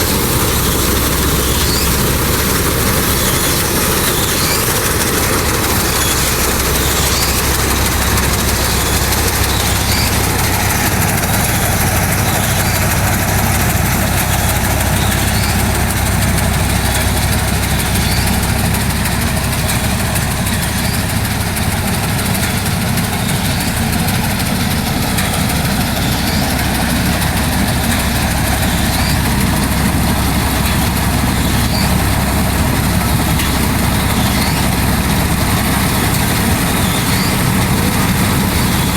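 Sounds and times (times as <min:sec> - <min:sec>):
tractor engine mechanical drone: 0:00.0 - 0:38.9.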